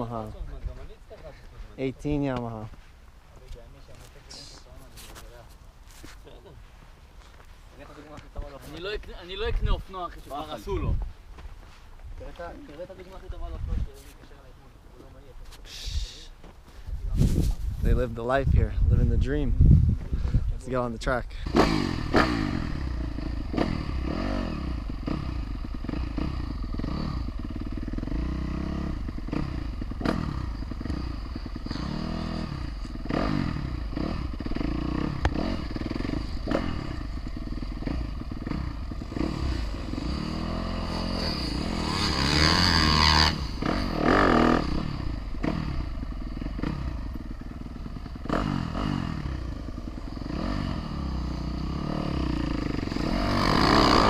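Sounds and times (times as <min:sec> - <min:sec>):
dirt bike engine revving: 0:21.4 - 0:54.0.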